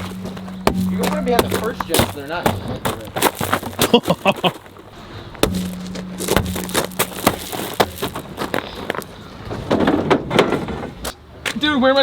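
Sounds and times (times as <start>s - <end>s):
sharp knocks and clanks: 0.0s - 4.0s, 5.4s - 11.0s.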